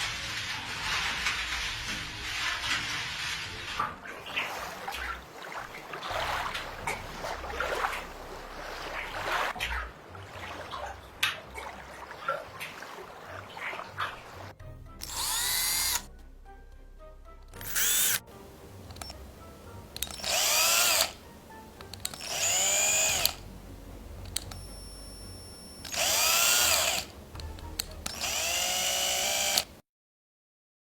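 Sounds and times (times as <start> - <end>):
small motor whirring: 15.0 - 16.1, 17.6 - 18.3, 20.0 - 21.2, 22.0 - 23.4, 24.5 - 27.1, 28.1 - 29.8.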